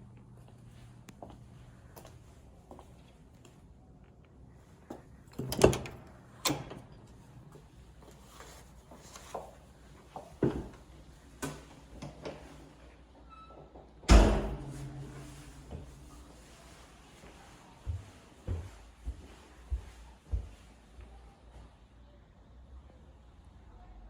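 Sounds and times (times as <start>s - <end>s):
doors knocking and clunking shut: 14.1s - 15.3s.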